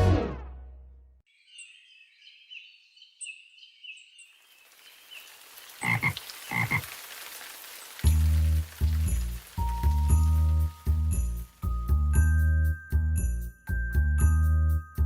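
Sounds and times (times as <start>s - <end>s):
rain hiss: 4.3s - 12.8s
frogs croaking: 4.6s - 8.8s.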